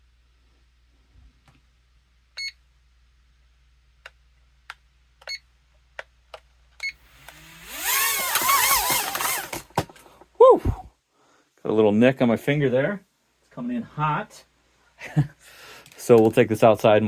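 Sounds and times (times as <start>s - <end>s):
helicopter rotors spinning up: 7.0s - 9.7s.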